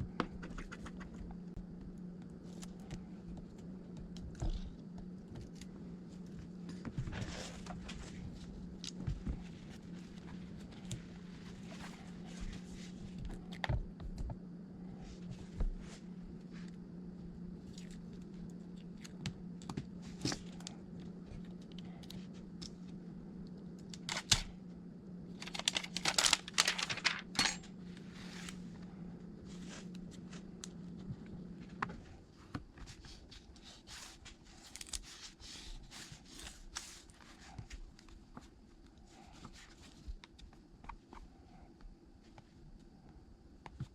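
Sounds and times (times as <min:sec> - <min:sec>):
low electrical hum: 0:00.0 - 0:43.9
rustling and scraping: 0:05.3 - 0:13.6, 0:25.4 - 0:41.3.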